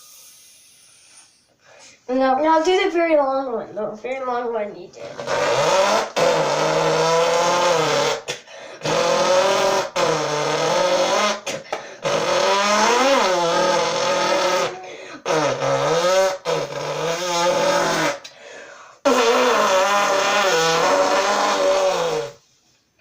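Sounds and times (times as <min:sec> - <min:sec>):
boy imitating car engine: 0:05.0 - 0:18.3.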